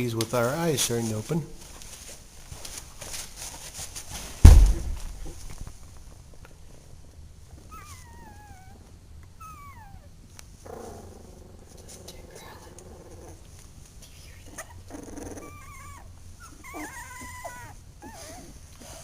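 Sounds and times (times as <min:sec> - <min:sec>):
loud thump: 0:04.4 - 0:05.6
puppy whimpering: 0:07.6 - 0:10.1, 0:14.5 - 0:19.0.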